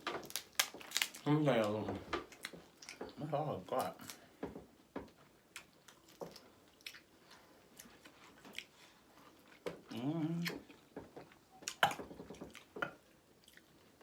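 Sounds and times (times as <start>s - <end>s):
chewing with clicks and smacks: 0.3s - 4.2s, 5.5s - 14.0s
person humming: 9.9s - 10.6s.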